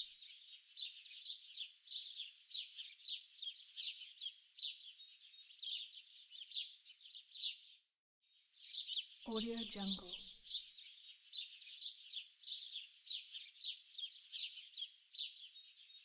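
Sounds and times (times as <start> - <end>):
birds chirping and singing: 8.6 - 16.0.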